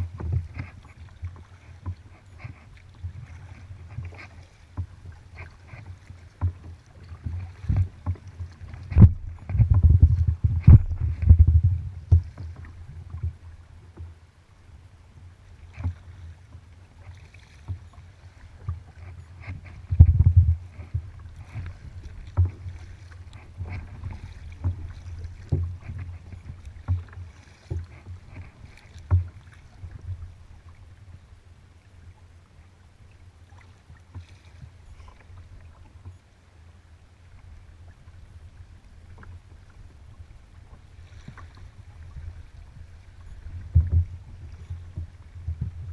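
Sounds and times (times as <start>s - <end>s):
paddle splashing in water: 0.0s - 14.7s, 15.4s - 36.2s, 37.2s - 45.9s
low steady rumble: 6.2s - 17.0s, 17.8s - 33.8s.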